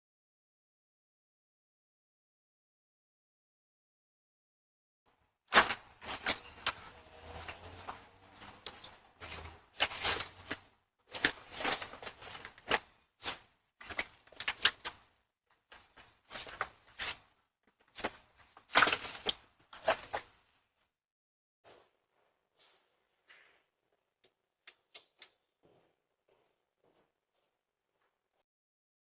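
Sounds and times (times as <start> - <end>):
knocks clunks and clatters: 5.5 - 12.9.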